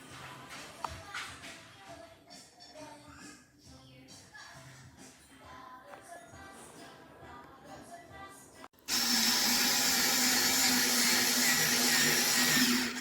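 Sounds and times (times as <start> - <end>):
faint background music: 0.0 - 8.8
electric screwdriver motor running: 8.9 - 13.0.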